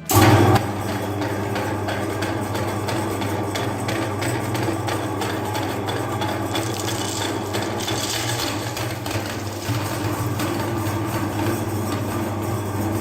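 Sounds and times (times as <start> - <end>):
meat grinder motor hum: 0.0 - 13.0
crackle of clicks and scraping: 6.5 - 10.6.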